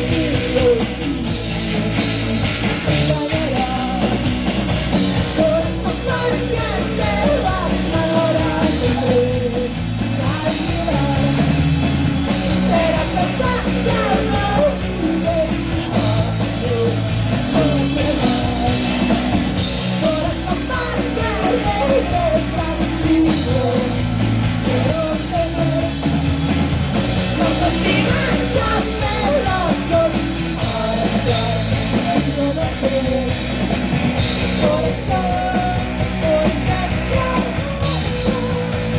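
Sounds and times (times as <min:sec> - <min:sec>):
person singing: 0:00.0 - 0:04.3, 0:05.0 - 0:11.7, 0:12.3 - 0:26.3, 0:27.3 - 0:33.5, 0:34.5 - 0:38.9
rock band playing: 0:00.0 - 0:38.9.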